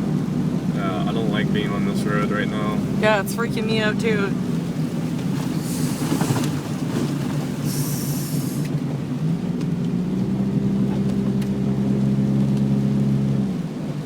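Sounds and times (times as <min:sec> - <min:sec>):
car driving on wet road: 0:00.0 - 0:14.0
low engine hum: 0:00.0 - 0:14.0
short hiss: 0:07.7 - 0:08.7.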